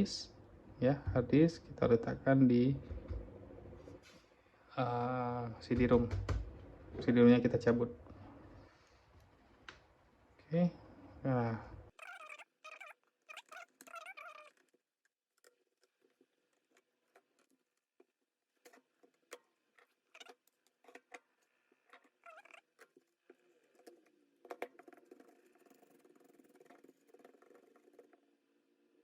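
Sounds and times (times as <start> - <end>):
clicks and taps of plastic parts: 5.7 - 6.6
thin high squeaks: 11.9 - 23.9.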